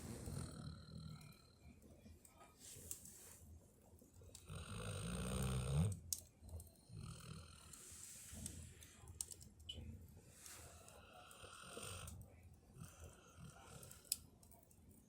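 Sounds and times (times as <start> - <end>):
puppy snoring: 0.0 - 1.6, 4.3 - 6.0, 6.9 - 7.9, 10.6 - 12.2, 12.8 - 14.2.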